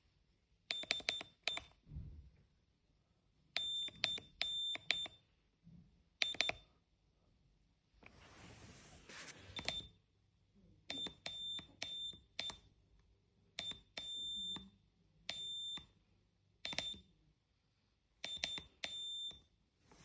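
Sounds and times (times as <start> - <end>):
morse code buzzer beeps: 18.3 - 19.4.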